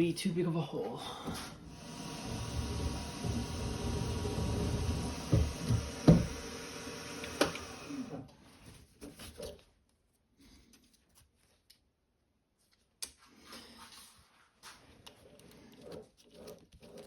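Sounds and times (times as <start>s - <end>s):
drilling machine running: 1.6s - 8.2s.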